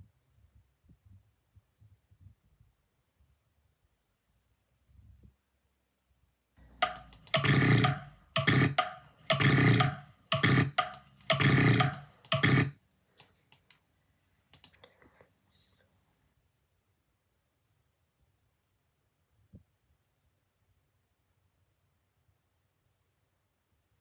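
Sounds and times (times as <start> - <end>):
person making rasping throat sounds: 6.8 - 12.8
faint clicks: 14.5 - 15.3.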